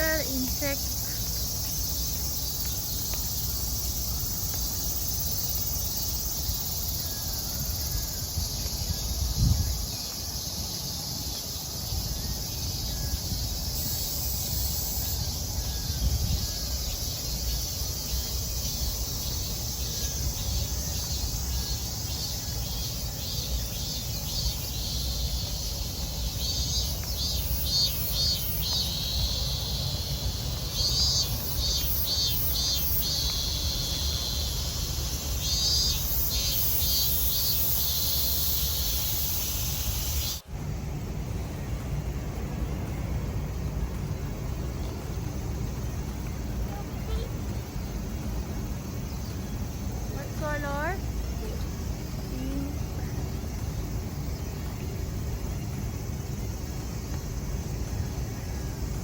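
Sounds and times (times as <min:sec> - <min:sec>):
cicadas shrilling: 0:00.0 - 0:59.0
rhythmic pulsing insect call: 0:00.0 - 0:59.0
steady low rumble: 0:40.4 - 0:50.1.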